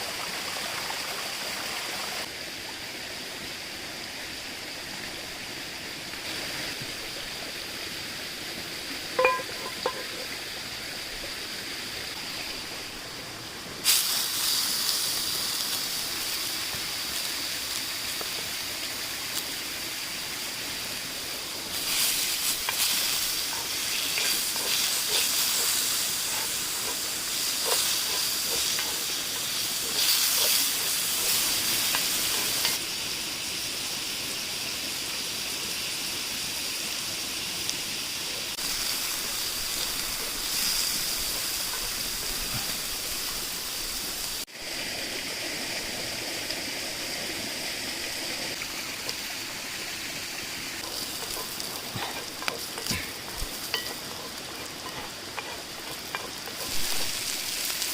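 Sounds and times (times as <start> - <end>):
food frying in hot oil: 13.8 - 57.9.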